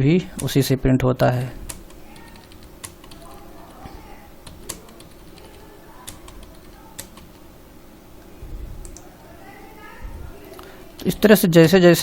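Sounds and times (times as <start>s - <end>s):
keyboard keystrokes: 1.7s - 7.4s, 8.8s - 9.1s.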